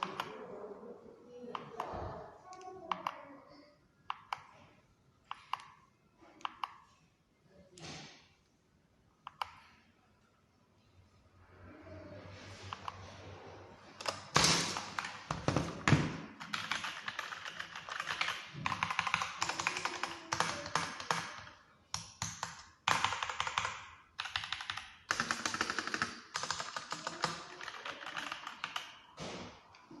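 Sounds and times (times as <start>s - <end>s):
mechanical keyboard typing: 0.0s - 0.4s, 14.0s - 29.1s.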